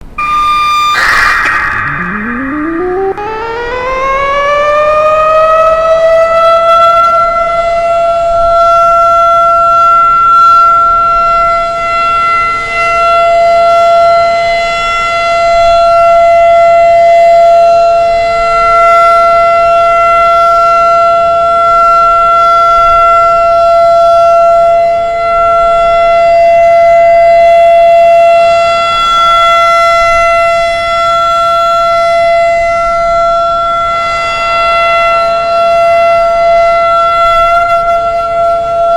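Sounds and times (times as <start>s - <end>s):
civil defense siren: 0.0s - 38.9s.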